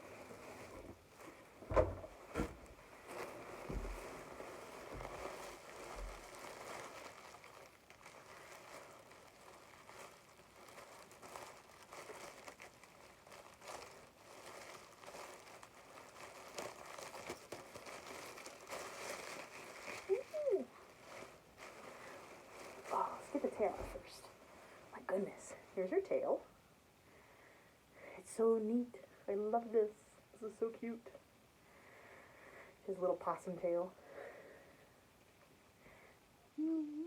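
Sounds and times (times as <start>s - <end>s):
packaging crinkling and rustling: 0.0s - 24.9s.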